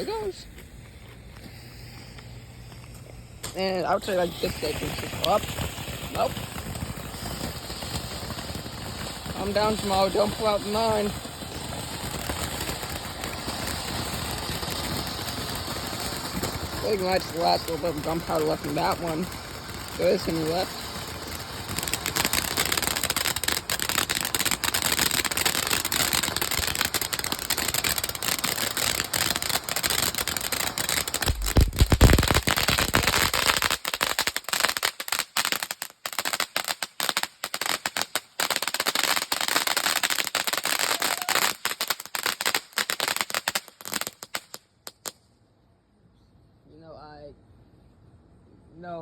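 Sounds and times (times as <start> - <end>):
firework gunpowder fizzing and crackling: 0.0 - 45.2.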